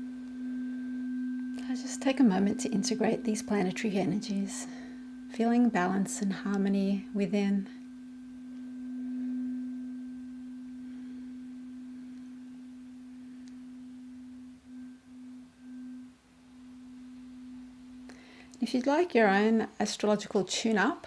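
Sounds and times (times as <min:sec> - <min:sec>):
tuning fork ringing: 0:00.0 - 0:18.8.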